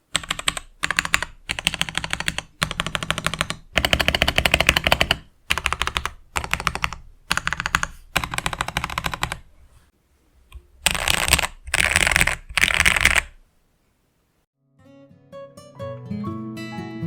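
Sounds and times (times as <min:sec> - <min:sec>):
mechanical keyboard typing: 0:00.1 - 0:09.5, 0:10.8 - 0:13.4.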